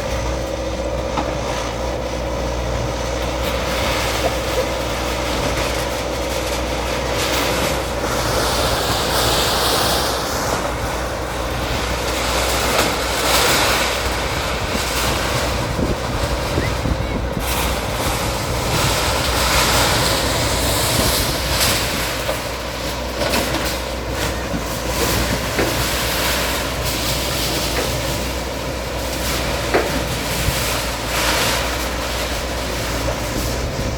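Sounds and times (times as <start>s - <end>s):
bulldozer diesel engine running: 0.0s - 33.9s
knocks and clatter: 29.2s - 33.9s.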